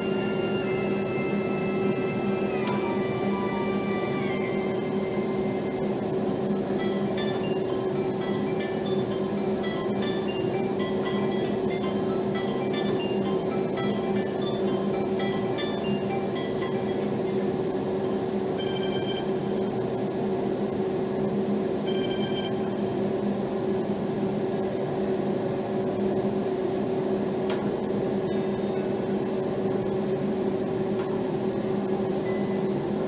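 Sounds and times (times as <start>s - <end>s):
phone ringtone: 6.4s - 17.5s, 18.1s - 19.6s, 21.8s - 22.8s.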